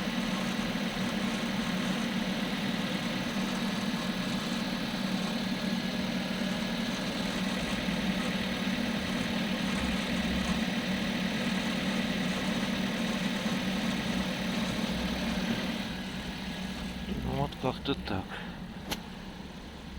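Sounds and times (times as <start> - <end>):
car engine idling: 0.0 - 19.9
gearbox grinding noise: 6.5 - 17.7.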